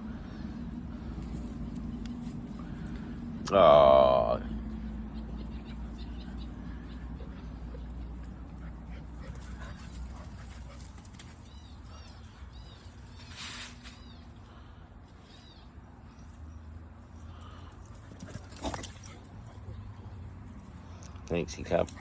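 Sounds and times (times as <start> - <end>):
scratchy rustle: 12.8 - 14.1.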